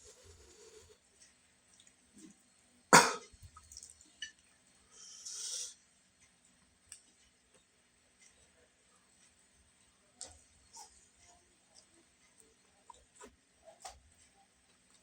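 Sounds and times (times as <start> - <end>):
person coughing: 3.0 - 3.3.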